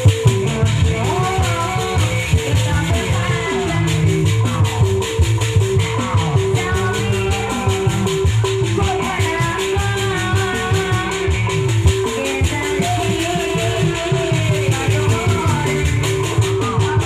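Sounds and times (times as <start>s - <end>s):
pitched percussion melody: 0.0s - 17.0s
wavering melodic line: 0.0s - 17.0s.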